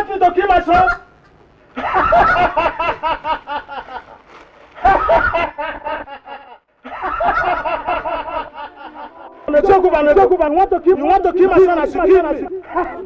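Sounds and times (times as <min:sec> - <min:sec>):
person laughing: 0:01.8 - 0:09.6.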